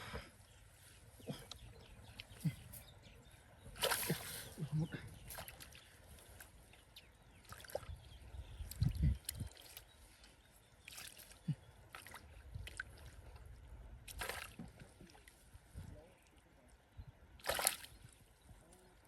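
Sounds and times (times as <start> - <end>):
muddy water sloshing and splashing: 3.4 - 15.5, 17.4 - 18.3.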